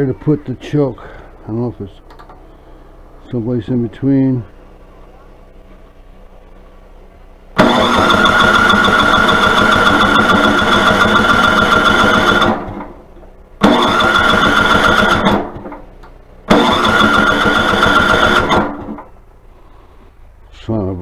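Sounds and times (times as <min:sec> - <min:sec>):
electric starter cranking engine: 0:07.6 - 0:13.0, 0:13.6 - 0:19.1.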